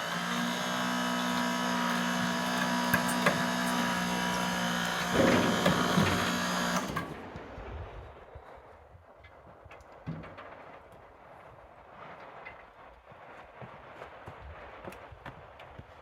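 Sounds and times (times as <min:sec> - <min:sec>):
small power tool motor running: 0:00.0 - 0:07.2.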